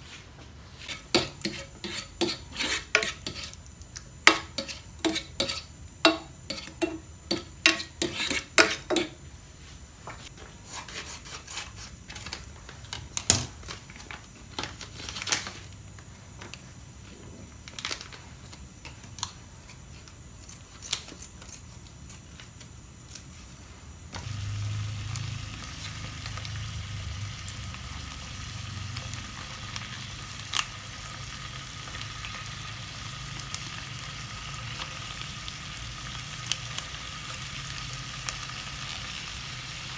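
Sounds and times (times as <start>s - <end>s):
food sizzling in a hot pan: 0.7s - 3.6s, 4.2s - 9.2s, 24.2s - 39.9s.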